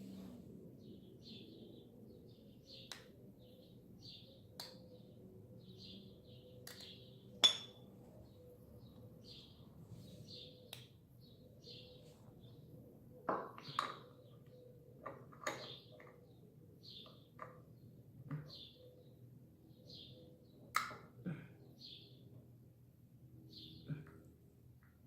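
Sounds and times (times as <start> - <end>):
bird chirping: 0.8 - 20.8
metal tools clinking and knocking: 7.4 - 7.8.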